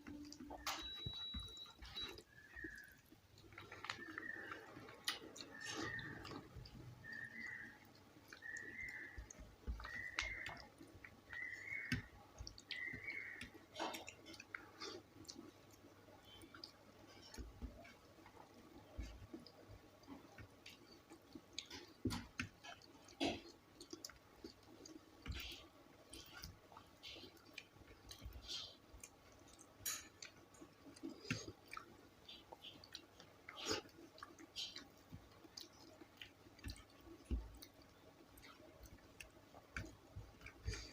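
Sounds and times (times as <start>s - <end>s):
chewing with mouth clicks: 0.0s - 40.9s.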